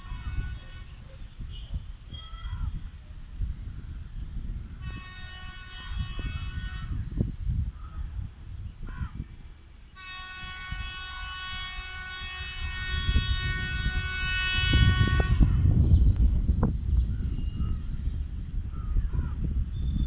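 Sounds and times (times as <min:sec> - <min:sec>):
rail vehicle horn blast: 0:00.0 - 0:02.6, 0:04.6 - 0:07.4, 0:09.9 - 0:16.2
low vehicle rumble: 0:13.0 - 0:20.0.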